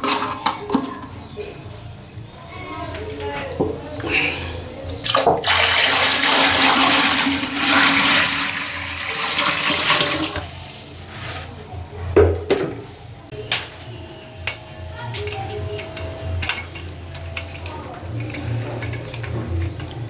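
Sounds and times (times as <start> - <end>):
toilet flushing: 5.1 - 11.2.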